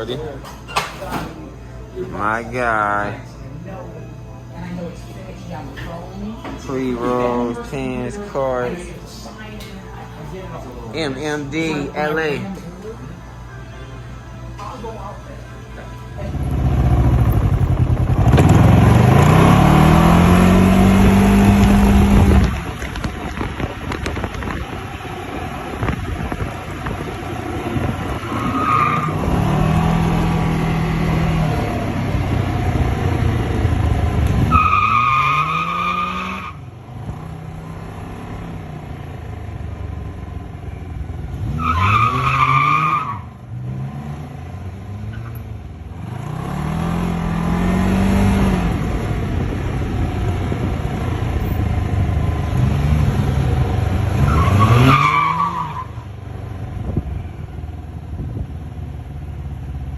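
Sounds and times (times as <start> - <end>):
engine revving through gears: 16.3 - 40.5, 41.1 - 56.0.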